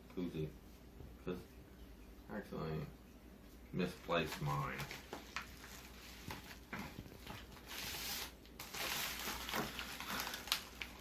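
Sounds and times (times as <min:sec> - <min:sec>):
packaging rustling and crinkling: 0:04.2 - 0:11.0.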